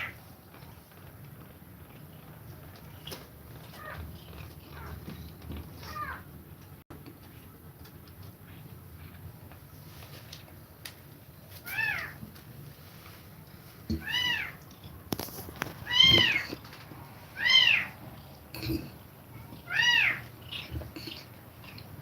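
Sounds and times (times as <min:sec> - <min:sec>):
kitten mewing: 0:19.6 - 0:20.8.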